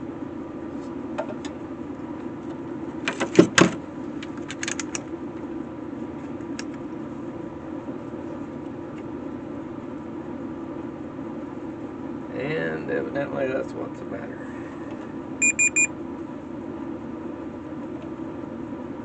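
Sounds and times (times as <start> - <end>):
steady low hum: 0.0 - 19.0
clicks and knocks of handling device: 3.1 - 5.0.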